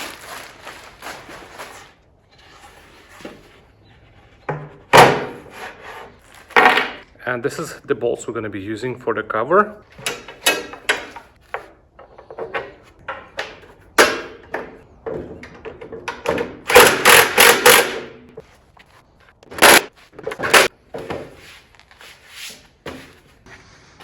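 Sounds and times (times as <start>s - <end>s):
metal parts knocking and clanking: 9.9s - 18.4s, 19.4s - 20.7s.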